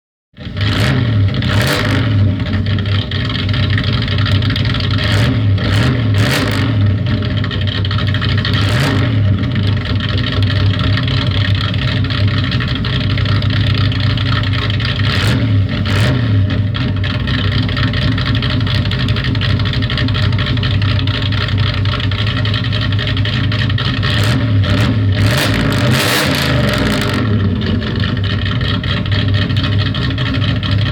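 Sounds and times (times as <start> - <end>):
car engine running loud: 0.4 - 30.9
sharp exhaust cracks: 0.6 - 30.9.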